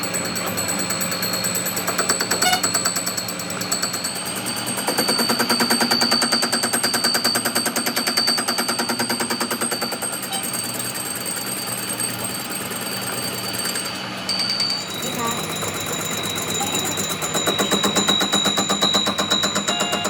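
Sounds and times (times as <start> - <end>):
machine high whine: 10.2 - 20.0
rapid machine knocks: 15.4 - 20.0.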